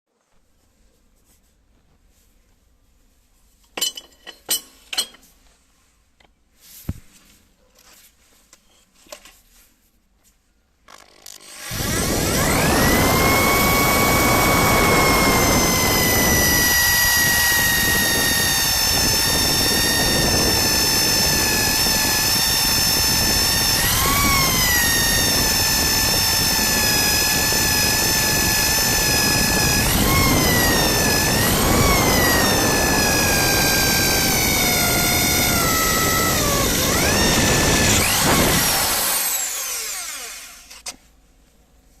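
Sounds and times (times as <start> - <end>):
electric drill drilling through metal: 10.9 - 40.9.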